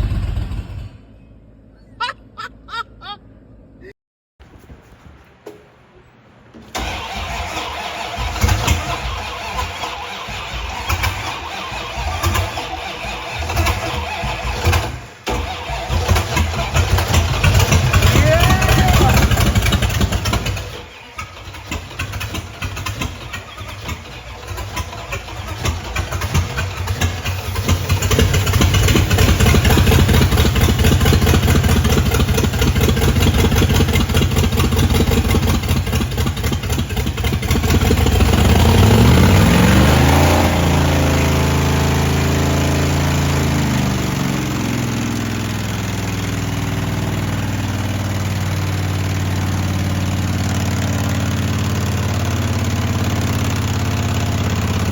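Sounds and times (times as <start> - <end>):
pickup engine clattering: 4.4 - 54.9.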